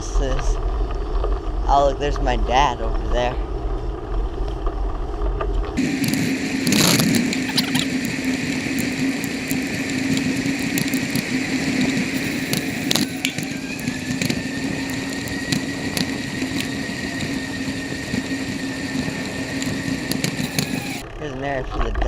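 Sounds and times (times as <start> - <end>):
steady hum: 0.0 - 21.6
bicycle rattling: 3.4 - 21.0.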